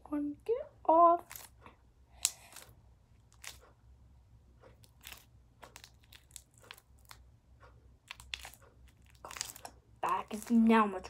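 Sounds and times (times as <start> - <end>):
sticky slime crackles: 1.2 - 3.7, 4.7 - 7.3, 8.0 - 11.0.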